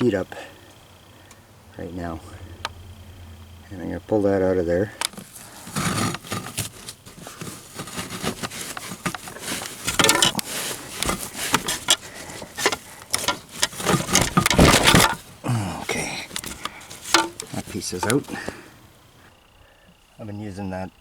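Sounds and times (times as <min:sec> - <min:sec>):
foam block scraping and rustling: 0:04.8 - 0:18.8
sharp clicks and knocks: 0:08.2 - 0:15.2, 0:16.4 - 0:18.3.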